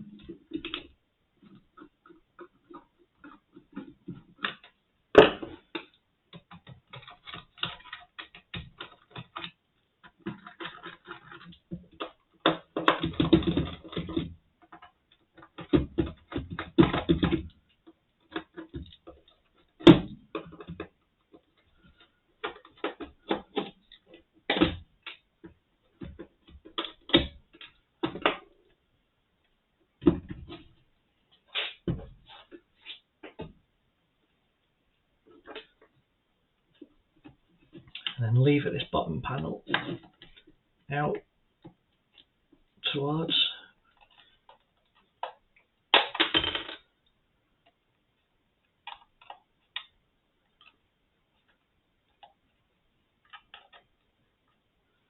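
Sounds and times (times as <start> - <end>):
hand tools clicking on plastic: 5.5 - 28.7.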